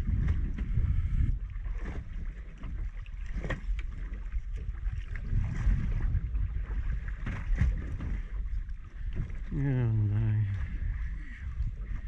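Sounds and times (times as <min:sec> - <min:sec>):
wind buffeting microphone: 0:00.0 - 0:09.7, 0:10.3 - 0:12.0.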